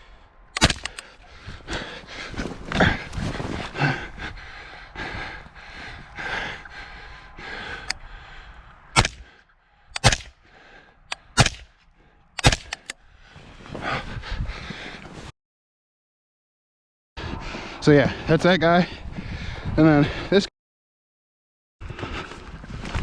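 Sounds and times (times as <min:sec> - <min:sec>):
rifle shots: 0:00.6 - 0:01.0, 0:09.0 - 0:09.3, 0:10.0 - 0:10.4, 0:11.3 - 0:11.7, 0:12.4 - 0:12.9.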